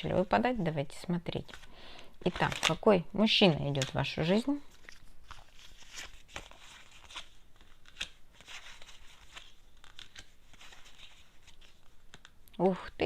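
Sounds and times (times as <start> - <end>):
cards rustling and sliding: 4.7 - 12.4.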